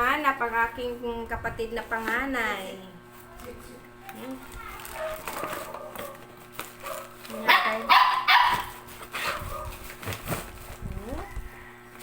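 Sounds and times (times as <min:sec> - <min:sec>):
dog barking: 0:04.9 - 0:09.8.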